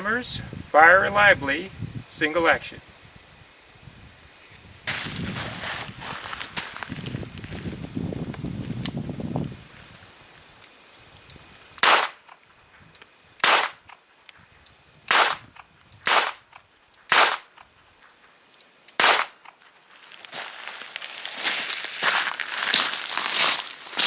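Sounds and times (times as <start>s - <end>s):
rustling hiss: 0.0s - 24.0s
primer pops from revolver: 11.3s - 12.4s, 13.0s - 14.0s, 15.1s - 17.7s, 18.9s - 19.6s.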